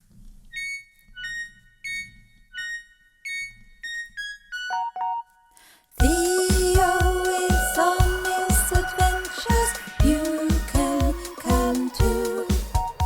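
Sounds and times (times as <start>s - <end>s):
music with steady beat: 6.0s - 13.0s.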